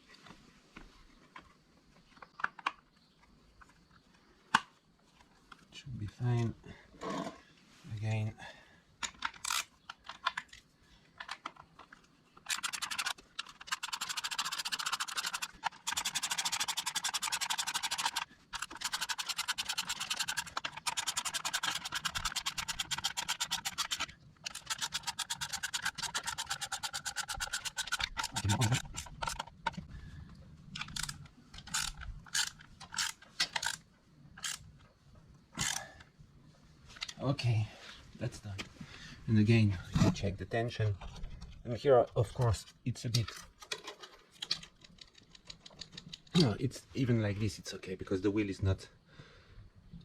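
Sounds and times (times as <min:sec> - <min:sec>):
socket ratchet clicking: 0:12.4 - 0:29.5, 0:30.8 - 0:33.8, 0:34.4 - 0:34.6.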